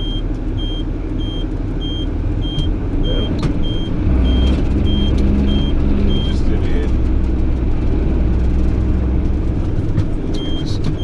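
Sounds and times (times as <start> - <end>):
electronic warning beep: 0.0 - 6.5, 10.4 - 11.0
tractor engine running: 0.0 - 11.0.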